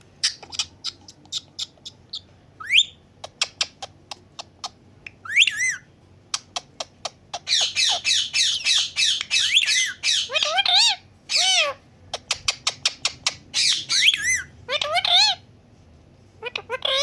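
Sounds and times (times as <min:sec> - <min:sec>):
parakeet chirping and squawking: 0:00.2 - 0:15.5, 0:16.4 - 0:17.0.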